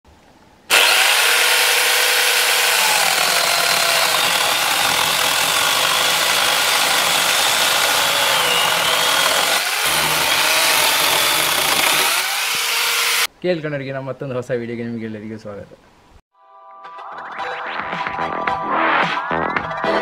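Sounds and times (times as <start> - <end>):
angle grinder whining: 0.7 - 13.3.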